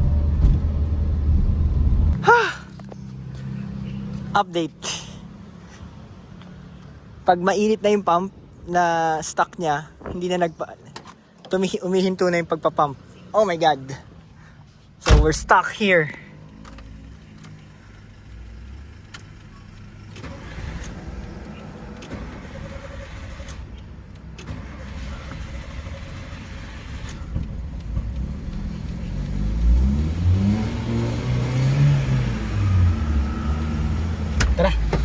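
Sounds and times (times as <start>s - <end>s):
car engine: 0.0s - 9.8s, 10.7s - 35.0s
sharp clicks: 16.4s - 35.0s.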